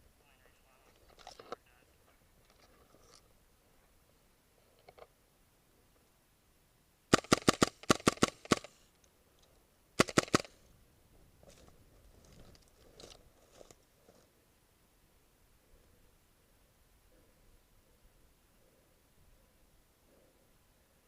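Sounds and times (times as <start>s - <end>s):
airsoft gun firing: 7.1s - 8.8s, 10.0s - 10.6s.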